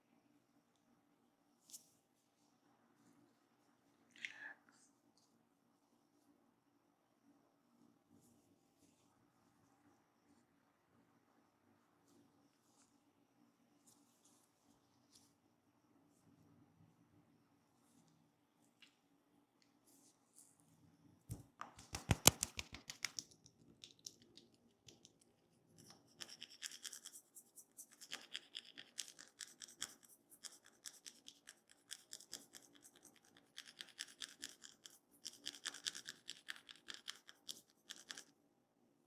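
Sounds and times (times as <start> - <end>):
fingers scratching scalp: 21.3 - 23.2, 25.8 - 38.3
fingers tapping head: 21.3 - 23.2.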